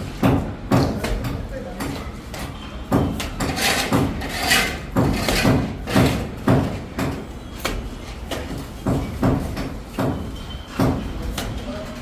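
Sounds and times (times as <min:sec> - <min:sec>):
plastering trowel slapping and scraping: 0:03.2 - 0:06.3.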